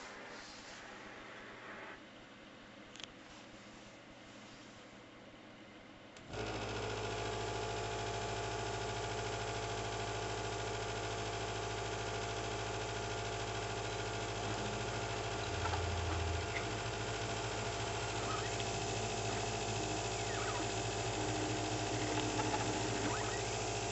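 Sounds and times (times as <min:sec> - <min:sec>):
laser cutter motor hum and whine: 0:06.4 - 0:23.9
low hum: 0:13.9 - 0:23.9.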